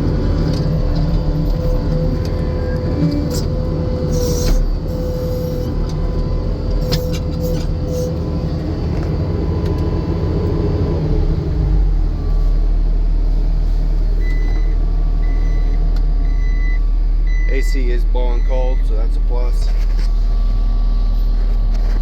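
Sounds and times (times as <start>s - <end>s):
diesel engine running: 0.0s - 22.0s
backup alarm beeping: 14.2s - 19.0s.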